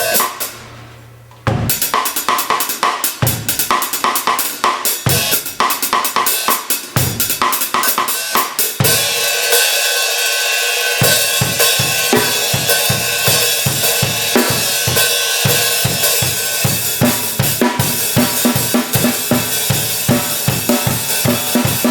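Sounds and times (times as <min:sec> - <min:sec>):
drum kit playing: 0:00.0 - 0:21.9.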